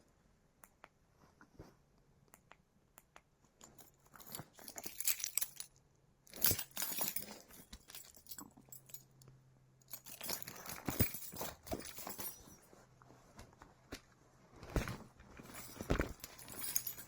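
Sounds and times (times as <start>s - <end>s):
rustling of handled objects: 3.6s - 9.2s, 9.9s - 13.7s, 14.6s - 17.0s.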